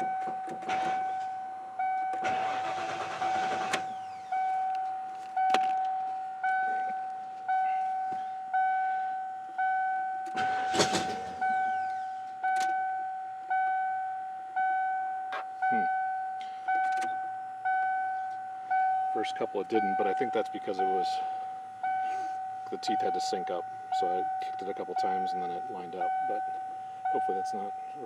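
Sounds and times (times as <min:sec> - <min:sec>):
car warning chime dinging: 0:00.0 - 0:28.0
starter motor bursts: 0:02.1 - 0:04.4, 0:10.3 - 0:12.0.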